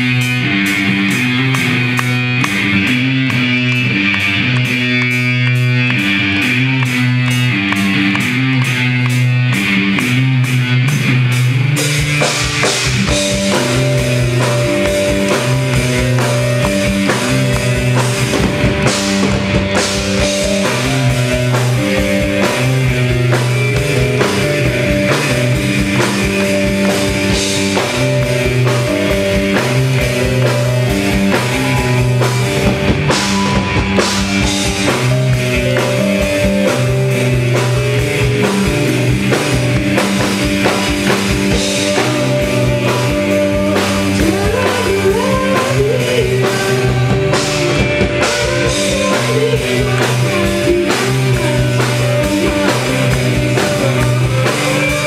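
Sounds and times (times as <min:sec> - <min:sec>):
bass: 0:00.0 - 0:55.0
drum kit beat: 0:00.0 - 0:55.0
keyboard notes: 0:00.0 - 0:55.0.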